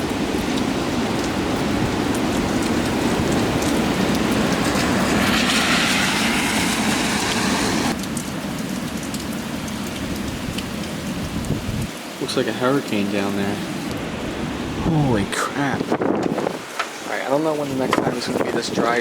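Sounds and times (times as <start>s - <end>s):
gusty wind buffeting microphone: 0.0s - 8.0s, 11.2s - 11.9s, 13.9s - 16.8s, 17.6s - 19.0s
heavy rain: 0.0s - 19.0s
rushing hiss: 4.6s - 8.0s.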